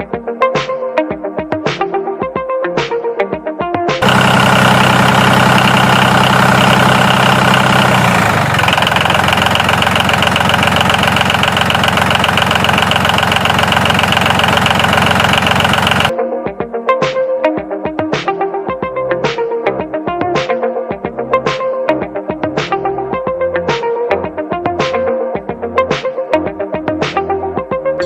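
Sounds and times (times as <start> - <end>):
small motor buzzing rattle: 4.0 - 16.1.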